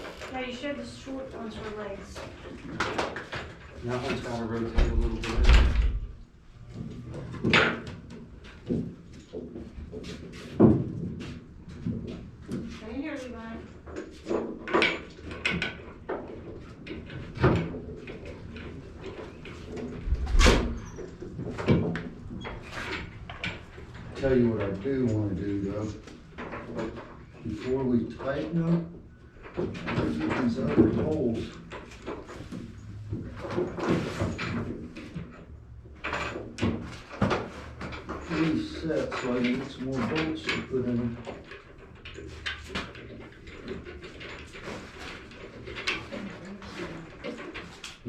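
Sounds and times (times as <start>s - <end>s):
heavy pool table parts knocking: 2.6s - 12.8s, 13.8s - 27.7s.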